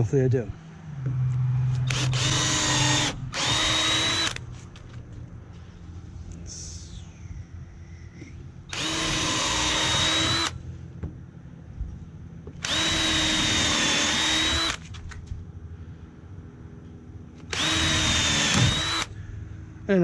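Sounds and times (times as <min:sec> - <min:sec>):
power drill drilling into wood: 0:01.8 - 0:04.5, 0:08.7 - 0:10.6, 0:12.6 - 0:14.8, 0:17.5 - 0:19.2.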